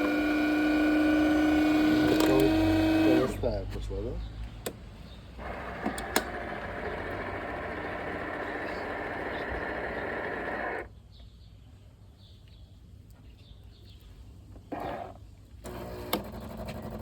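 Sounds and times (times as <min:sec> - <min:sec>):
coffee machine whirring: 0:00.0 - 0:03.4, 0:05.4 - 0:10.9, 0:14.7 - 0:17.0.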